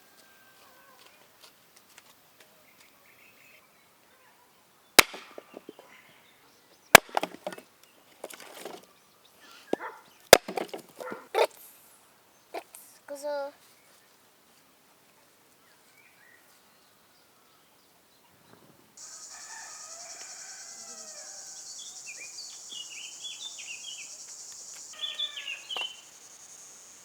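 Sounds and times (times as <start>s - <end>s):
sharp chopping strikes: 5.0s - 5.7s, 7.0s - 7.6s, 10.4s - 10.8s
wood clattering and splintering: 5.0s - 5.8s, 7.0s - 7.6s, 8.2s - 8.9s, 10.3s - 11.2s.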